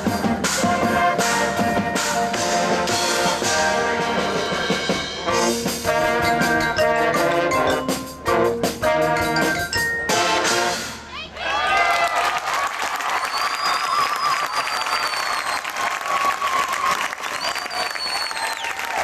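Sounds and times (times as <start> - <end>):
marching band playing: 0.0 - 11.3.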